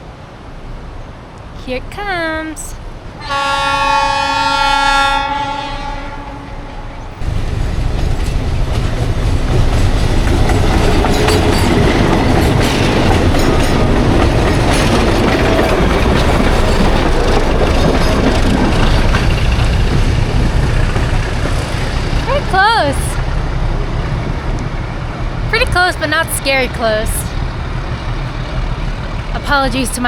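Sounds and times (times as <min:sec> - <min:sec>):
train passing with rumble: 0:00.0 - 0:30.0
train horn blast: 0:03.2 - 0:07.2
wheels clattering over rail joints: 0:07.2 - 0:30.0.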